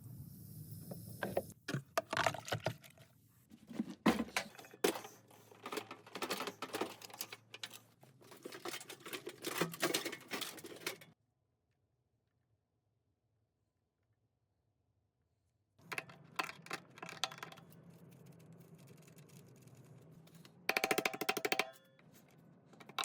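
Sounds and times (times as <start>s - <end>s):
tools and parts clattering: 3.6s - 11.2s, 15.8s - 23.0s.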